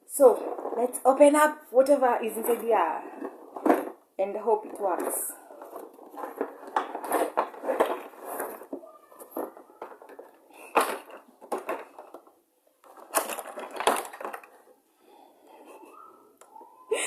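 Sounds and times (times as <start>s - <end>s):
packaging crinkling and rustling: 5.4s - 14.8s.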